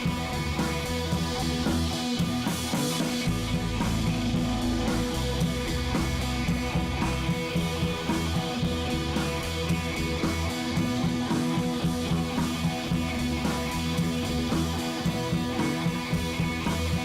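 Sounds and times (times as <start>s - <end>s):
rock music with guitar and drums: 0.0s - 17.0s.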